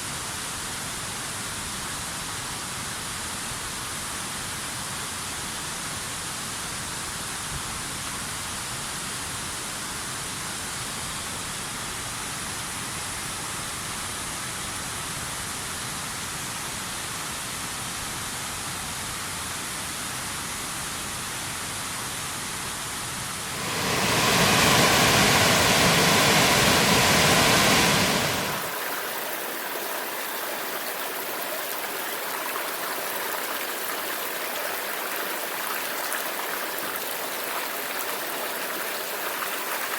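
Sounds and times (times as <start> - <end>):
waterfall rushing: 23.4 - 39.9.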